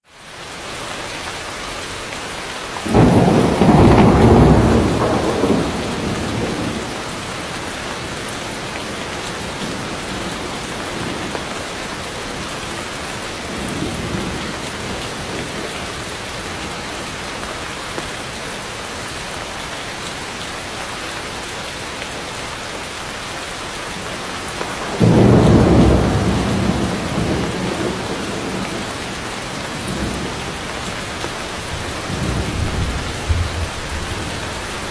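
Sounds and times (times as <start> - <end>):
heavy rain on foliage: 0.0 - 34.9
thunder rumbling: 2.8 - 11.6, 24.7 - 34.9.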